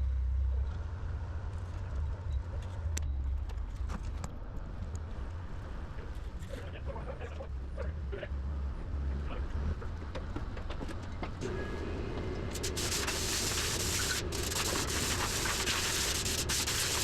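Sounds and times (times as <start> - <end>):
engine running with low rumble: 0.0 - 17.0
loud hiss: 11.4 - 17.0
steady hum: 11.4 - 17.0.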